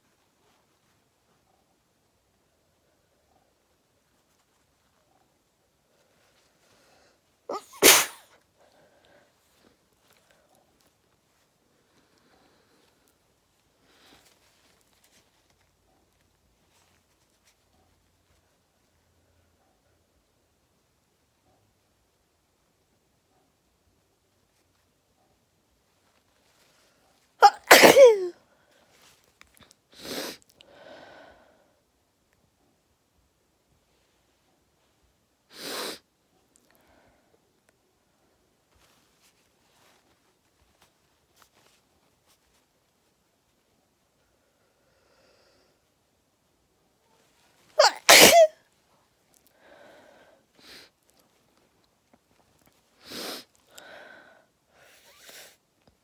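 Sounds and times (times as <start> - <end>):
quiet breaths: 0.0 - 7.5, 8.2 - 27.4, 28.4 - 47.8, 48.6 - 56.0
person sneezing: 7.5 - 8.4, 27.4 - 28.4, 47.8 - 48.6
person sniffing: 7.5 - 8.4, 27.4 - 28.3, 30.0 - 30.4, 35.5 - 36.1, 47.8 - 48.5, 53.0 - 53.5
faint breathing: 30.6 - 31.9, 44.3 - 45.9, 49.5 - 51.0, 53.0 - 55.2.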